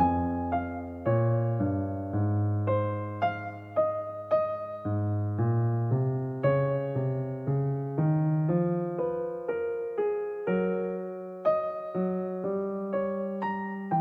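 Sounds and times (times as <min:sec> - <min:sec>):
gentle piano music: 0:00.0 - 0:14.0.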